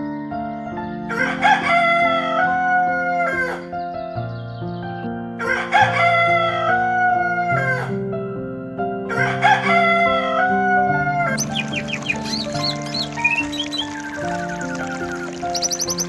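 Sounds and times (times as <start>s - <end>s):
rooster crowing: 1.1s - 3.6s, 5.4s - 7.9s, 9.1s - 15.8s
background music with sustained chords: 7.9s - 16.0s.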